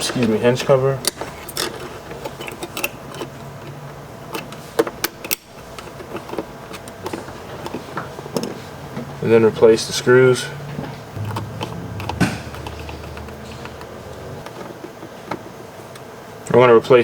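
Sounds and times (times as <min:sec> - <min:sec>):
steady low hum: 0:11.2 - 0:14.5.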